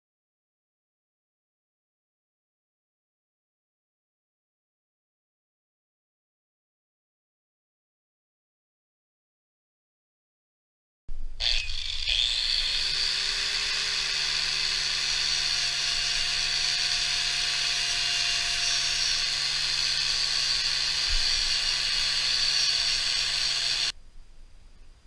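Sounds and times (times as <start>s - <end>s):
power tool motor whining: 11.4s - 24.0s.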